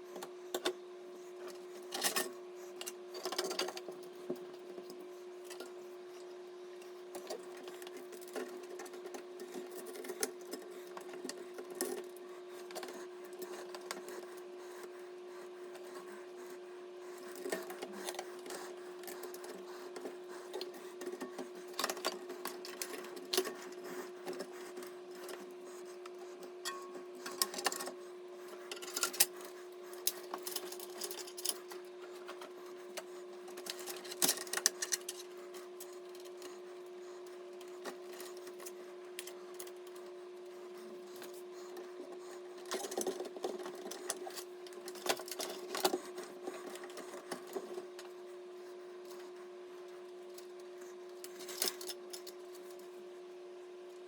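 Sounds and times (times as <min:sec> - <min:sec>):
clicks and rustles of handling: 0:17.2 - 0:53.1.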